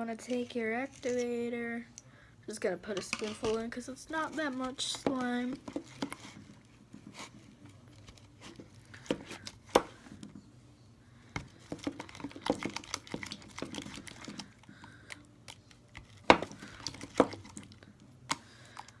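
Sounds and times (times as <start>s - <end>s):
sticky slime crackling: 11.7s - 14.7s.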